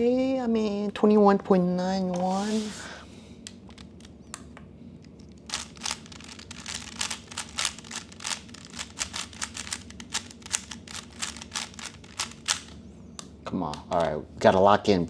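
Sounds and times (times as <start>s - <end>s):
speed cube layers clicking: 5.5s - 12.7s.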